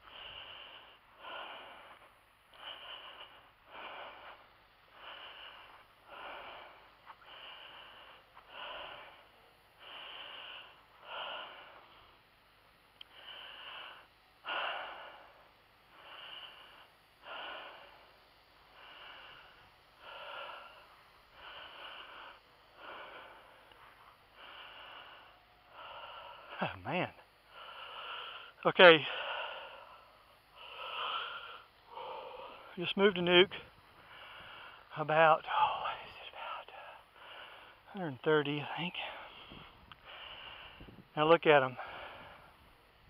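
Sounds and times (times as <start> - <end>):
man breathing hard: 0.0 - 43.0.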